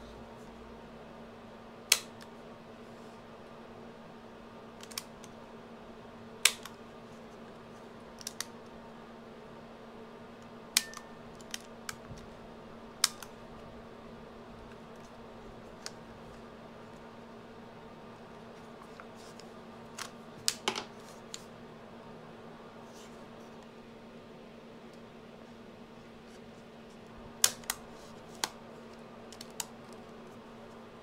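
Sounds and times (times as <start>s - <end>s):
cassette player buttons clicking: 6.4s - 6.8s.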